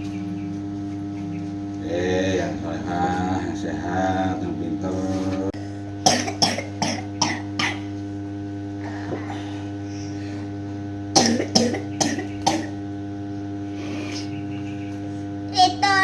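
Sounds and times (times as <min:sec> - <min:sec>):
steady hum: 0:00.0 - 0:16.0
child coughing: 0:06.0 - 0:07.9, 0:11.2 - 0:12.8.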